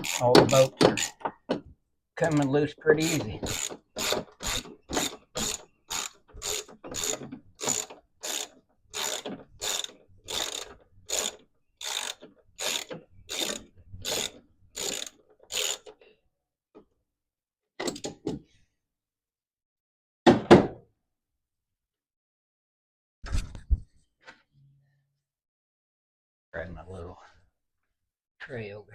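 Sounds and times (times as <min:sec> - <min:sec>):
socket ratchet wrench clicking: 0:00.0 - 0:01.2, 0:03.5 - 0:15.9.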